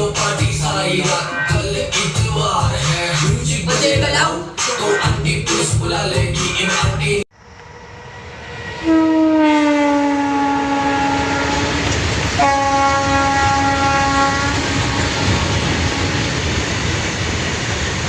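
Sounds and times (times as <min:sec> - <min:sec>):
freight train rumble and clatter: 0:07.4 - 0:18.0
locomotive horn blasts: 0:08.8 - 0:16.5.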